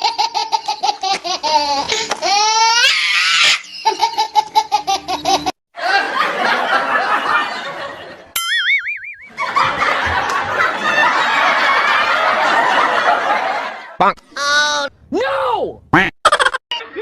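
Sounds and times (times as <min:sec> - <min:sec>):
person laughing: 0:00.9 - 0:02.8, 0:16.2 - 0:16.6
wobbling cartoon tone: 0:08.4 - 0:09.4.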